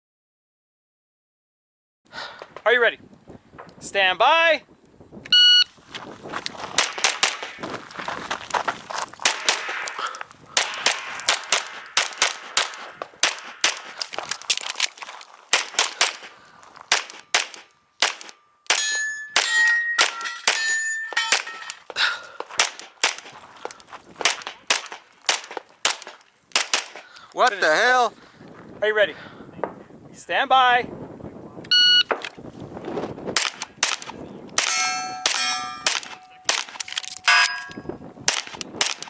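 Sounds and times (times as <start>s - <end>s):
rapid pistol fire: 6.8s - 7.6s, 9.2s - 14.0s, 15.5s - 16.2s, 16.9s - 18.3s, 24.2s - 27.0s
steel targets ringing: 17.2s - 21.9s, 34.6s - 38.0s.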